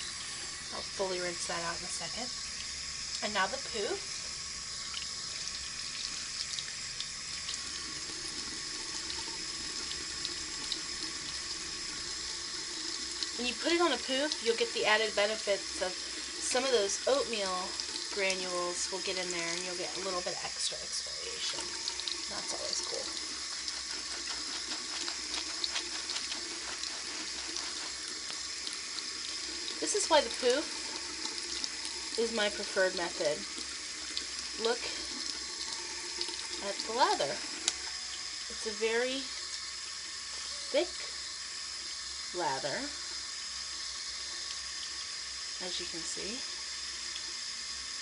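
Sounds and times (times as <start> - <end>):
water running from tap: 0.0 - 48.0
wet squishing crackles of lather: 22.2 - 28.9.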